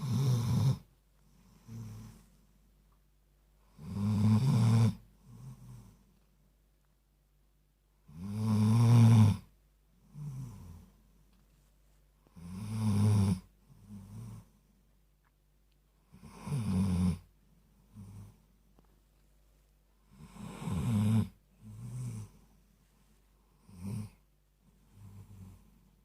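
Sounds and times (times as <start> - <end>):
dog snoring: 0.0 - 0.9, 1.6 - 2.2, 3.6 - 6.0, 8.1 - 10.9, 12.3 - 14.6, 16.0 - 17.3, 17.9 - 18.4, 20.1 - 22.5, 23.5 - 24.2, 24.8 - 25.9.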